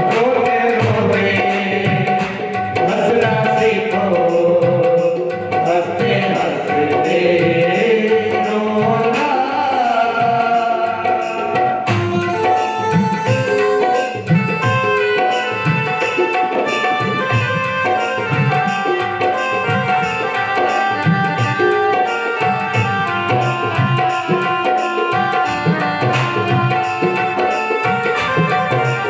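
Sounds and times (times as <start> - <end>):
tabla rhythm: 0.0 - 29.0
sustained melody lines: 10.5 - 29.0.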